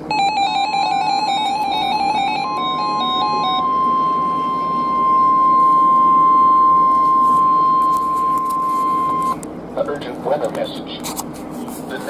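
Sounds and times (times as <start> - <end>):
steady high alarm tone: 0.0 - 9.4
stepping electronic melody: 0.1 - 9.4.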